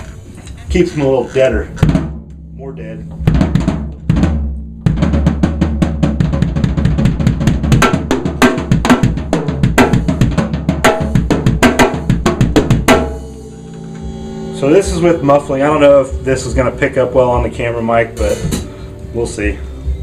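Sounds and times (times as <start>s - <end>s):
snare drum strokes and rolls: 3.2s - 13.2s.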